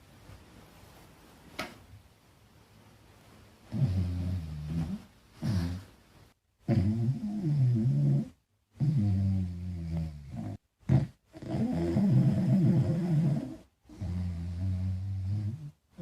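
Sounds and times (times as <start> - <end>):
small dog snoring: 3.7 - 5.9, 6.6 - 16.0.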